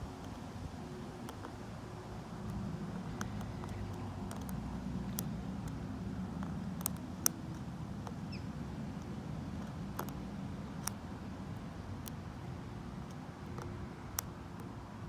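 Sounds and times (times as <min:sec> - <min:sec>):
lock pick clicking in lock: 0:03.2 - 0:05.3.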